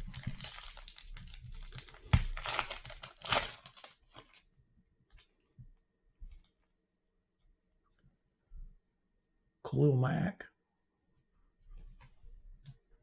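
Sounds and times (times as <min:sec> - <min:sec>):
foil wrapper tearing and crinkling: 0:00.0 - 0:04.4.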